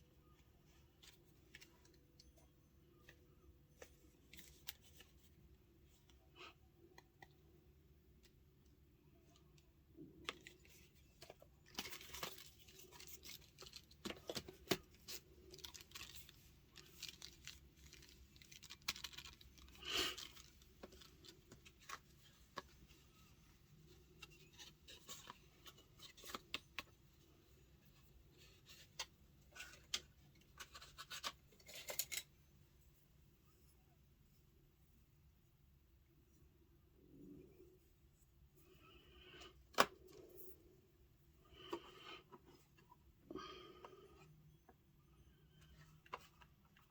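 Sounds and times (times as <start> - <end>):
packaging crinkling: 11.6 - 22.0.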